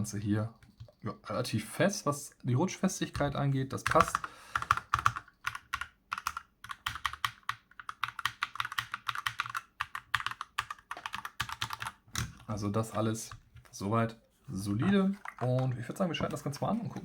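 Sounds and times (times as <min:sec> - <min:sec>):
mechanical keyboard typing: 0:03.1 - 0:12.5.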